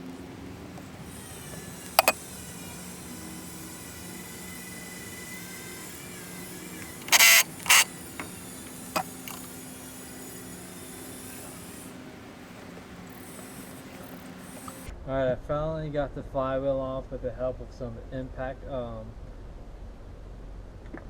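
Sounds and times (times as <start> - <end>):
impact wrench bursts: 0.0 - 14.9.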